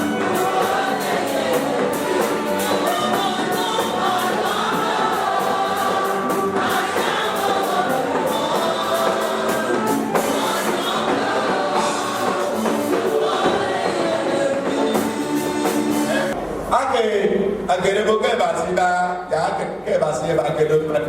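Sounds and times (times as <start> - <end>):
choir singing gospel music: 0.0 - 16.4
percussion beat: 0.0 - 16.5.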